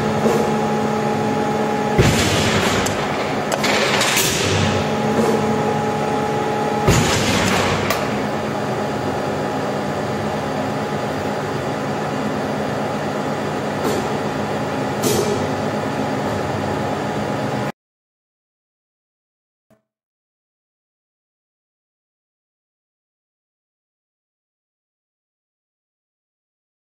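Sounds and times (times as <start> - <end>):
hydraulic unit humming: 0.0 - 17.7.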